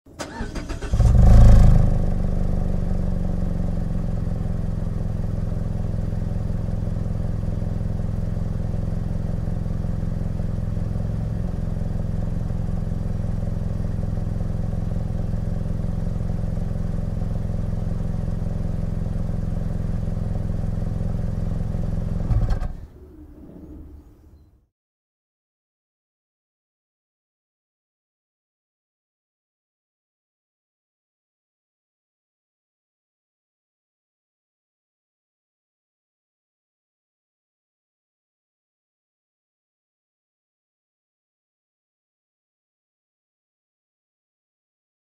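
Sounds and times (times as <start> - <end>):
car engine starting and idling: 0.1 - 24.4.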